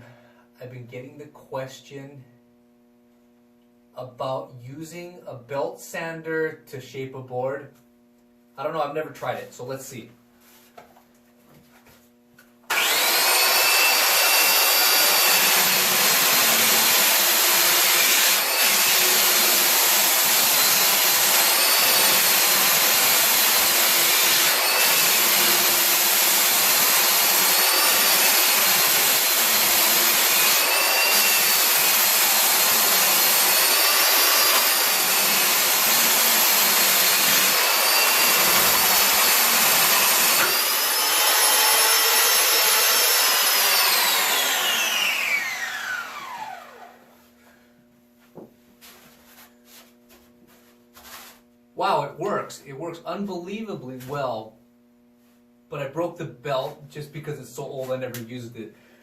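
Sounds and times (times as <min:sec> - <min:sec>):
electric belt sander running: 0:12.7 - 0:47.1
faint sander whine: 0:12.7 - 0:52.4.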